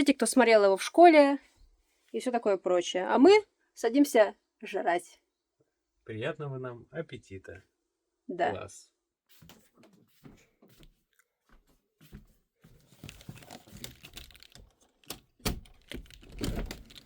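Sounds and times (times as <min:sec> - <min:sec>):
food wrapping crinkling and tearing: 0:12.9 - 0:15.1, 0:15.7 - 0:17.0.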